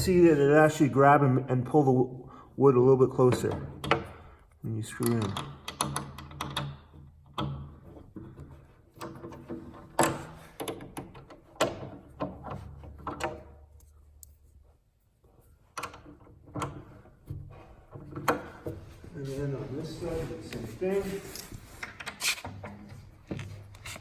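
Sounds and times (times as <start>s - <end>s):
allen key tightening: 5.0s - 14.4s, 15.6s - 18.8s
metal and wood knocks: 5.2s - 13.6s, 15.8s - 19.0s.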